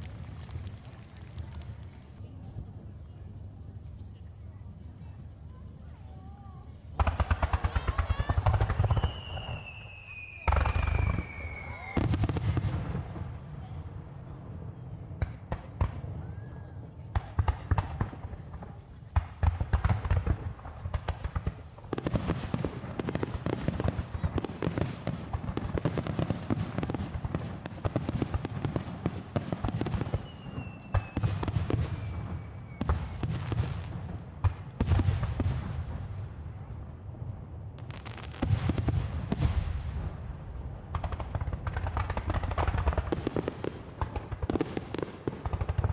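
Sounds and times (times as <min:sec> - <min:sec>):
fireworks crackling: 0:00.0 - 0:02.5, 0:06.9 - 0:13.4, 0:17.2 - 0:36.4, 0:37.8 - 0:45.9
fireworks booming: 0:06.9 - 0:14.2, 0:17.1 - 0:45.9
falling whistle: 0:07.5 - 0:12.0.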